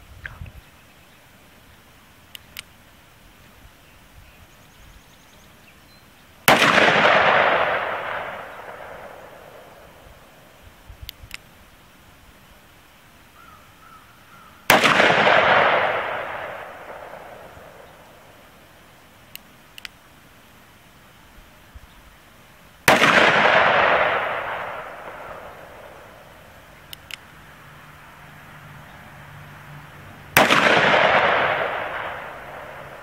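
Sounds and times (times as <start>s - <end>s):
faint paired clicks: 2.3s - 2.8s, 11.0s - 11.5s, 19.3s - 20.0s, 26.8s - 27.3s
revolver shot with echo: 30.4s - 33.0s.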